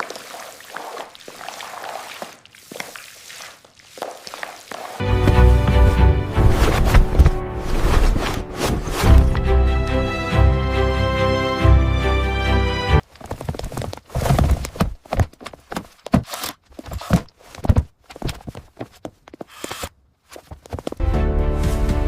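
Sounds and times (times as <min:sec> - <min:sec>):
background music: 0:05.0 - 0:13.0, 0:21.0 - 0:22.0.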